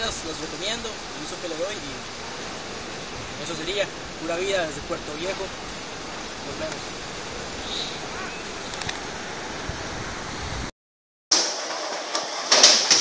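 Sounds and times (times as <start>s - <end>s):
bright hiss: 0.0s - 9.1s
rushing outdoor noise: 0.0s - 10.7s, 11.3s - 13.0s.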